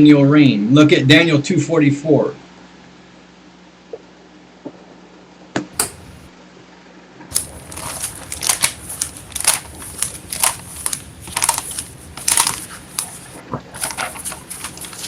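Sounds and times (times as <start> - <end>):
paper pages rustling: 7.3 - 15.0.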